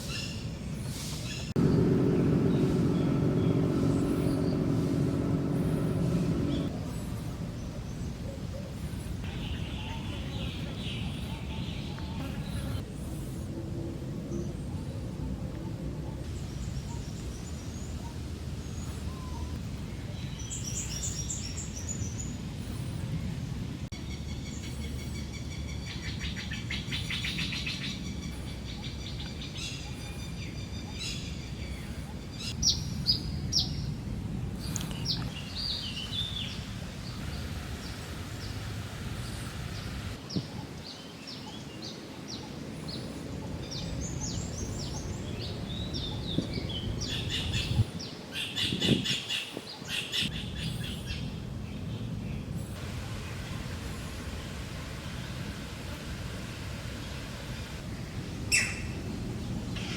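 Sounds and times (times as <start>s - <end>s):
birds calling and chirping: 0.0s - 13.4s, 15.6s - 33.9s, 34.5s - 55.4s, 58.0s - 59.9s
low steady rumble: 1.4s - 12.1s
bird trill: 58.5s - 59.0s.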